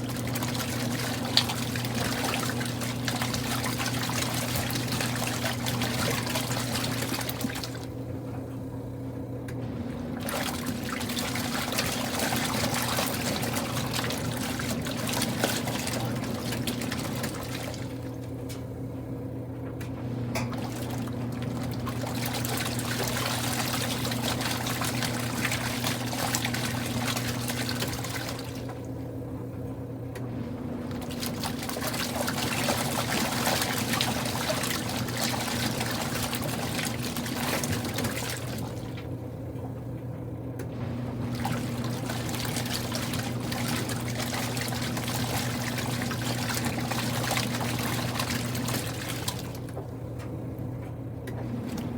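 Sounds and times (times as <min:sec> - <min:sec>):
steady low hum: 0:00.0 - 0:51.9
water churning in washing machine: 0:00.0 - 0:51.9.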